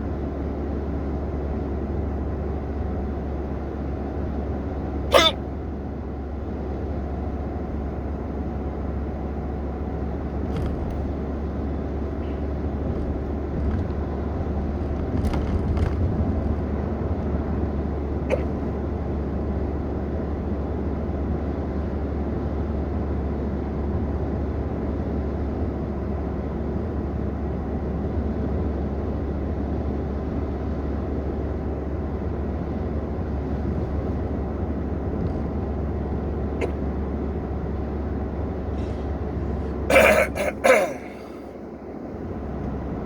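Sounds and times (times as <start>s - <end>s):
car interior rumble: 0.0s - 21.7s, 29.6s - 43.0s
person making throat sounds: 5.1s - 5.4s, 18.3s - 18.7s, 39.9s - 41.6s.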